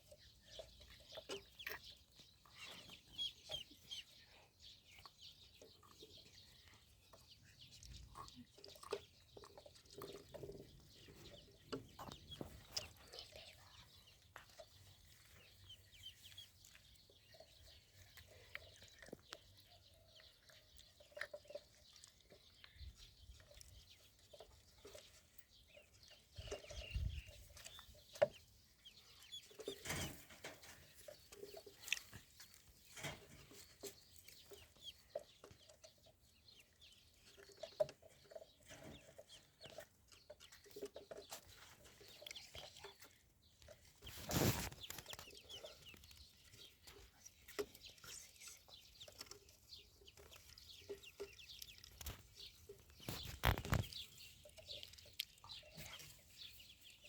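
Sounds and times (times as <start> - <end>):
ducklings peeping and clucking: 0.0 - 57.0
rustles: 29.0 - 34.8, 43.6 - 57.0.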